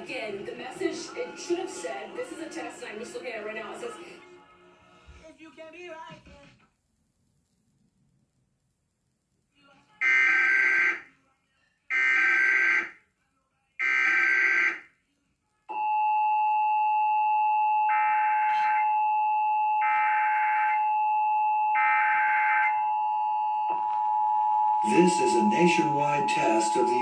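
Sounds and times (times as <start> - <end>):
two-tone attention signal: 23.4 - 27.0
digital data bursts: 24.8 - 27.0.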